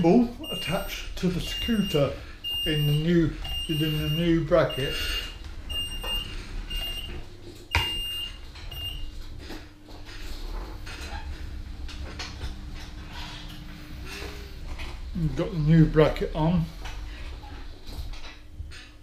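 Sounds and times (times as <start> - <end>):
steady low hum: 0.0 - 19.0.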